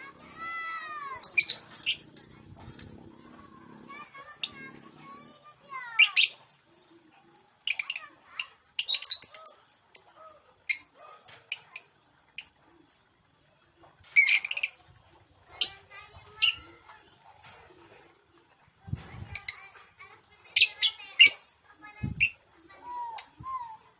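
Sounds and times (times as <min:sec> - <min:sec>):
bird chirping: 0:00.0 - 0:12.6, 0:14.1 - 0:14.8.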